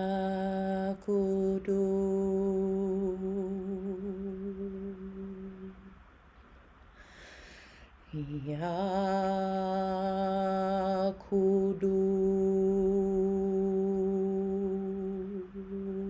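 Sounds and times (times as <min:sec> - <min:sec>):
soft intake of breath: 0:06.9 - 0:08.1
person chanting long notes: 0:08.2 - 0:16.0.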